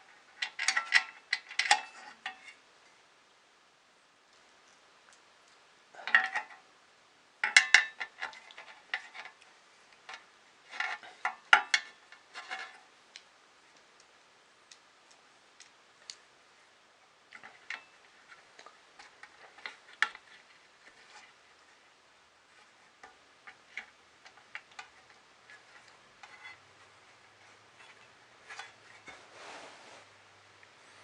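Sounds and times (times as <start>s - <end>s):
metal parts clicking and rattling: 0.4s - 2.5s.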